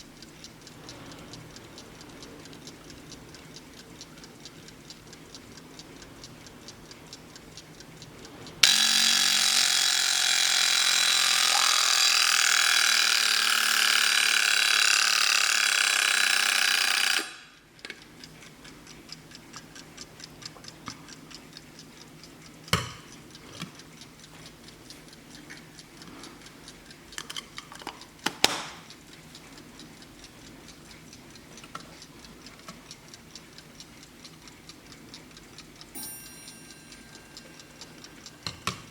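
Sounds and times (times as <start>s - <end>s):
alarm clock ticking: 0.0s - 38.9s
alarm clock bell ringing: 8.6s - 17.3s, 36.0s - 38.4s.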